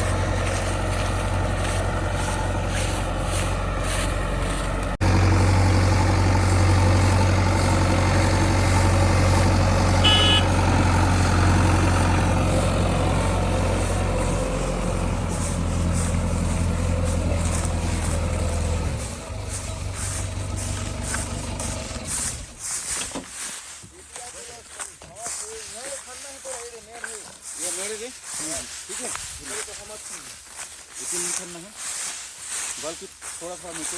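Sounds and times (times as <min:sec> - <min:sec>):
heavy diesel engine running: 0:00.0 - 0:33.9
high-pitched tone: 0:10.0 - 0:10.6.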